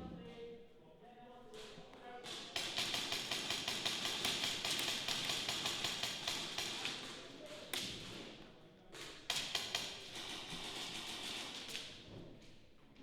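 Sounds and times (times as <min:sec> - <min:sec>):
airsoft guns firing: 0:02.3 - 0:07.2.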